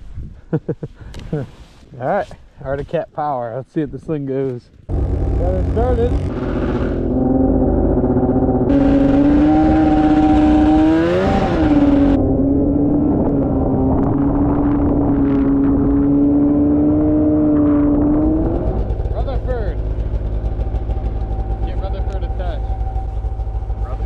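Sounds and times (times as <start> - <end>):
rush of noise: 4.9 - 24.0
snowmobile engine idling and revving: 4.9 - 24.0.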